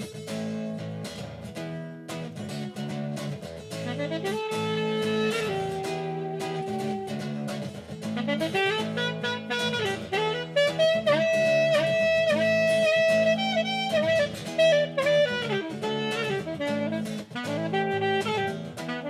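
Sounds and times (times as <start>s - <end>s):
instrumental music: 0.0s - 19.0s.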